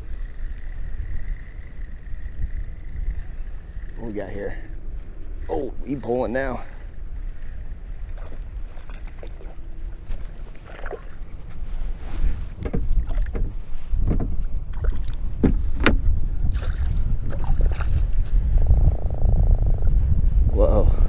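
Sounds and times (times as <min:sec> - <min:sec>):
water around kayak: 0:00.0 - 0:21.0
wind on microphone: 0:00.0 - 0:21.0
short sharp splashes and knocks: 0:14.1 - 0:18.1.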